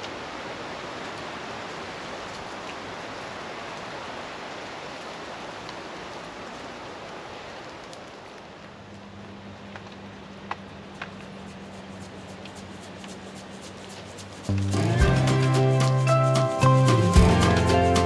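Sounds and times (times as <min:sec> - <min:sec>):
steady rushing hiss: 0:10.7 - 0:18.0.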